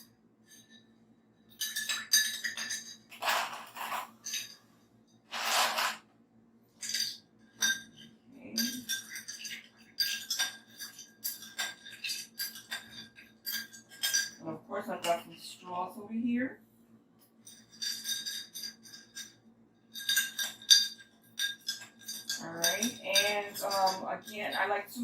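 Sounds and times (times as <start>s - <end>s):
ice rattling: 5.3s - 6.0s.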